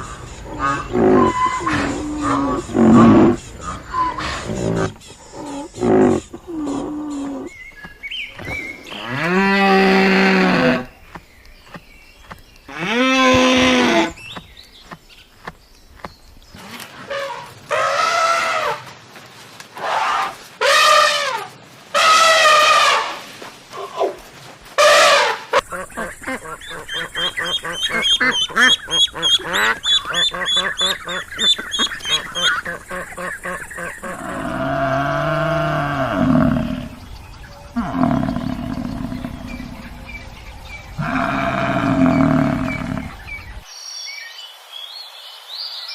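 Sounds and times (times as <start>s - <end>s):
large animal deep calls: 0.0s - 7.5s, 32.4s - 40.2s, 40.9s - 43.6s.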